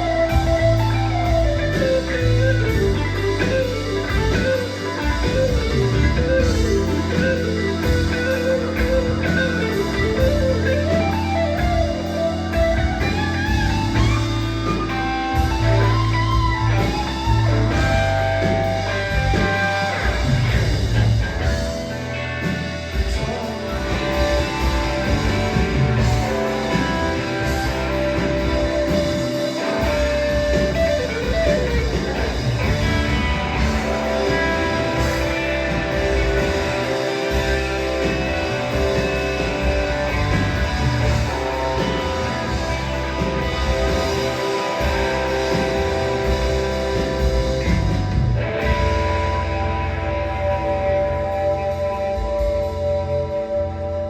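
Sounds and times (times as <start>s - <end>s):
bass notes: 0.0s - 54.0s
drums: 0.0s - 54.0s
electric guitar lead: 0.0s - 54.0s.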